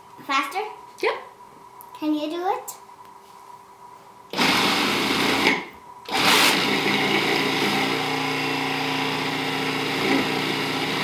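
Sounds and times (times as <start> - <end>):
food processor motor chopping: 4.4 - 11.0.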